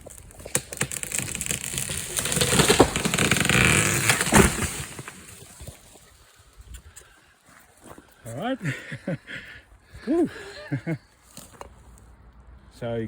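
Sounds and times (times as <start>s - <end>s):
tree crashing down: 0.0s - 6.2s.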